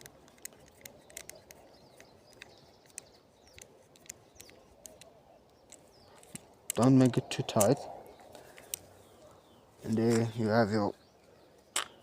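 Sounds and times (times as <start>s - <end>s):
screw clicking as turned by hand: 0.0s - 6.8s.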